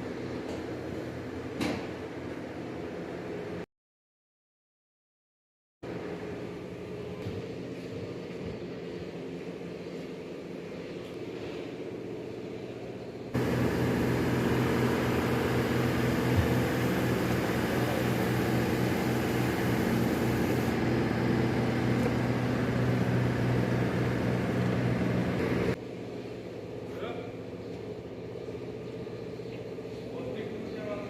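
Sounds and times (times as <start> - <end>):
machine hum with held tones: 12.2 - 26.8.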